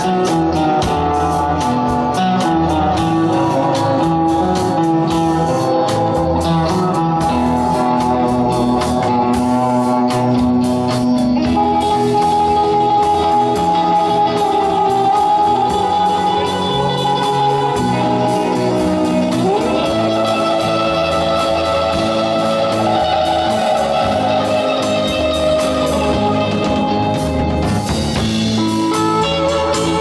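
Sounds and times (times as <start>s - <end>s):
electric guitar: 0.0s - 30.0s
live rock and roll band: 0.0s - 30.0s.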